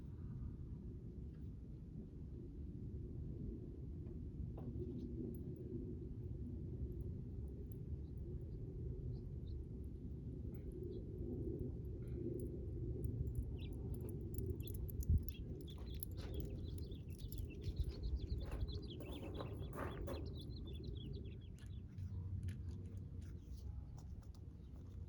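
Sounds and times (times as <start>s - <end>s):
low background rumble: 0.0s - 25.0s
bird chirping: 13.4s - 22.0s.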